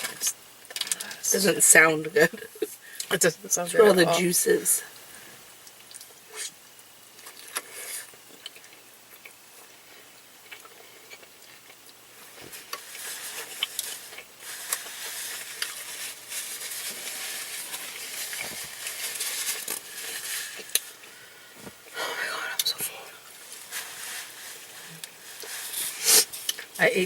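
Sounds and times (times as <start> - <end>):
person chewing food: 7.2 - 16.2.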